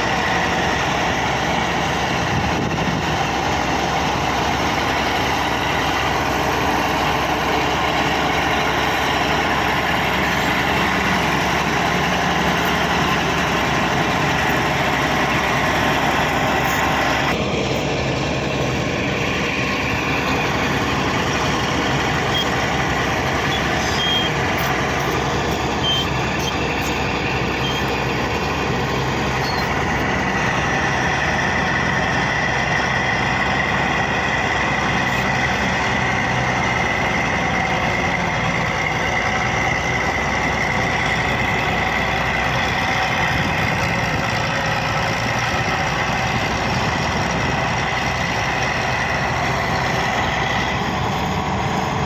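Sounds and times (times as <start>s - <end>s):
bulldozer diesel engine running: 0.0s - 52.0s.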